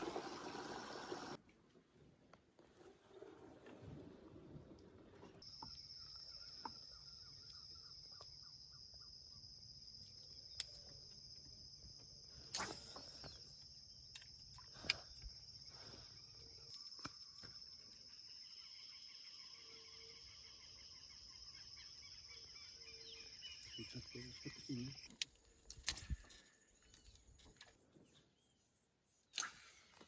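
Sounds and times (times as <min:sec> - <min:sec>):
insects trilling: 0:05.4 - 0:25.1
bird chirping: 0:18.1 - 0:25.1.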